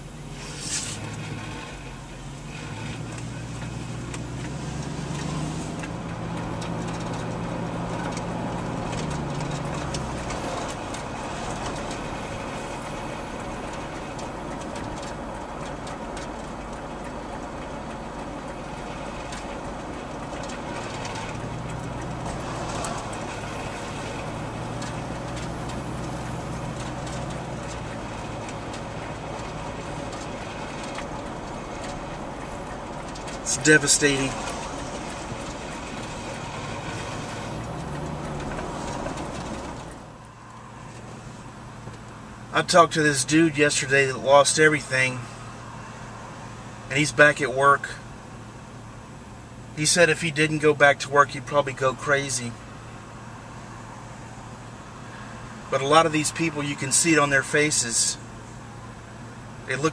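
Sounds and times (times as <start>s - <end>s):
vehicle engine accelerating: 0.0s - 44.2s.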